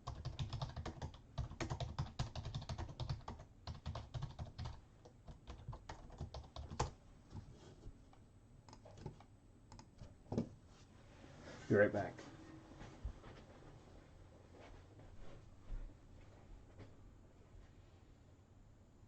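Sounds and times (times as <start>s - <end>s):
computer keyboard typing: 0.0s - 7.0s, 8.7s - 10.1s.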